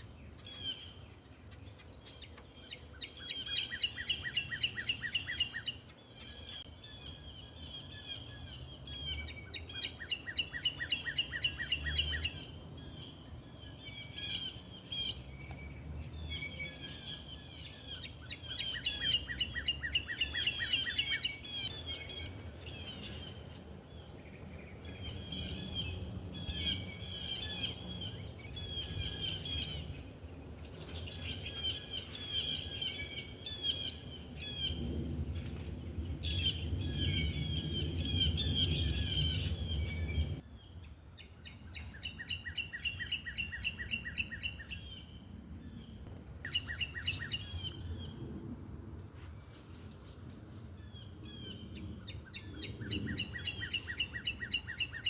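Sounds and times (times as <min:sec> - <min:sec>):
small birds chirping: 0:00.0 - 0:48.3, 0:49.4 - 0:55.0.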